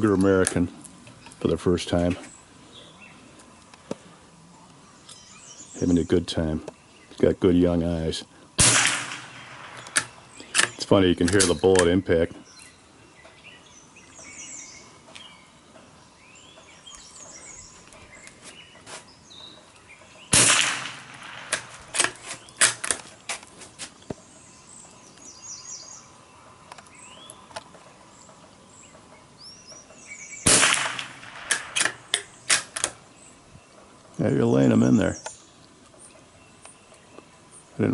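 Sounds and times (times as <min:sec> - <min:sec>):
birds chirping: 0:00.0 - 0:37.9
rifle shots: 0:08.6 - 0:11.5, 0:20.3 - 0:23.0, 0:30.4 - 0:33.0
sharp clicks and knocks: 0:20.6 - 0:24.2, 0:30.8 - 0:33.0.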